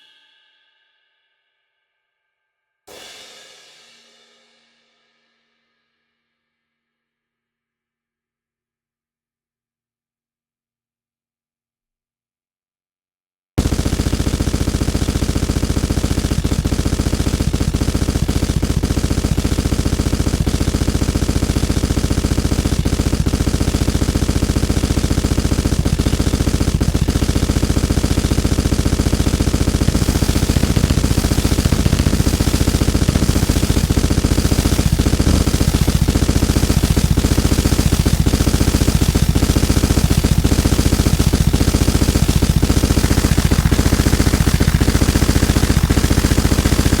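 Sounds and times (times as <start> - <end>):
distorted noise stuttering fast: 13.6 - 47.0.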